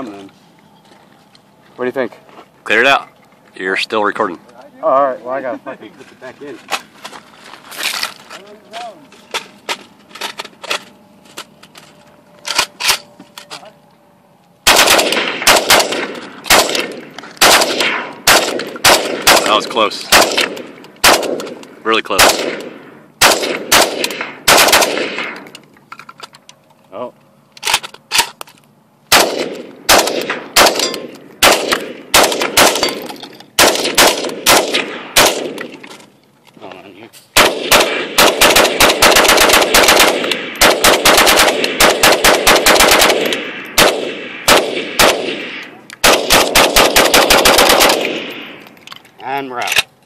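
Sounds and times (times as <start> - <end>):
rifle shots echoing: 14.6 - 25.5, 29.1 - 35.8, 37.4 - 48.7
rifle handling clicks: 48.6 - 50.0.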